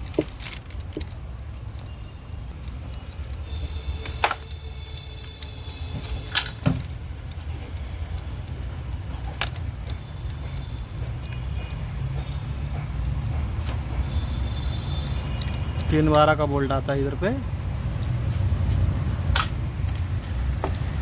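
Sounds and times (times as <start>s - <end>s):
steady low rumble: 6.8s - 15.8s.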